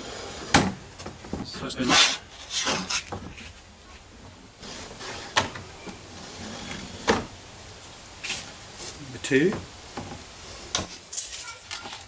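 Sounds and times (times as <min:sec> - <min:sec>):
rustle of handling: 0:07.8 - 0:09.5, 0:10.6 - 0:12.0.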